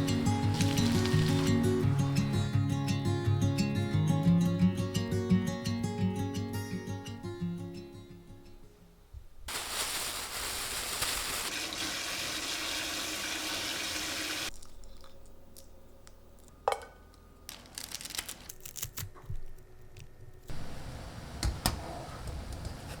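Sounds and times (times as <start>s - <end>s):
water running from a tap: 0.1s - 1.6s, 9.5s - 14.5s.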